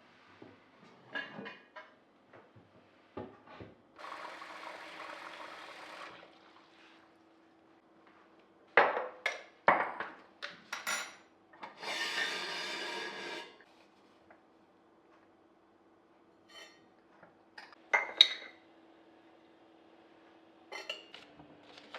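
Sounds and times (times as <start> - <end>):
water running from tap: 4.0 - 7.2.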